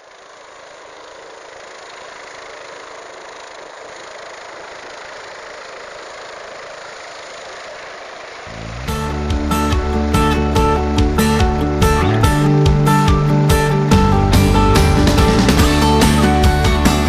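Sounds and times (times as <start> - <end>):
helicopter engine and rotor: 0.0 - 17.0.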